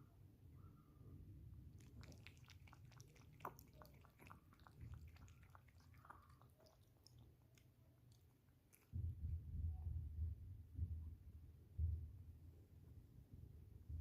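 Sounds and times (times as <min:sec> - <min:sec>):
puppy chewing: 0:01.8 - 0:09.0.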